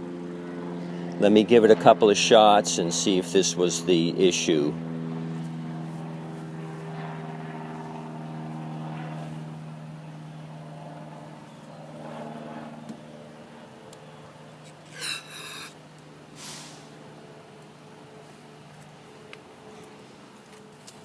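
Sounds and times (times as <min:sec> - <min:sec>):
small lawn mower engine running: 0:00.0 - 0:21.0
brief hiss: 0:16.4 - 0:16.9.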